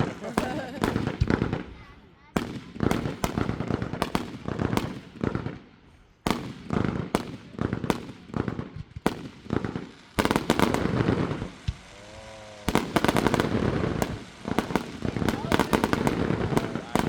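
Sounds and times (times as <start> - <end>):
firework bangs: 0.0 - 17.0
rapid firework crackling: 0.0 - 17.0.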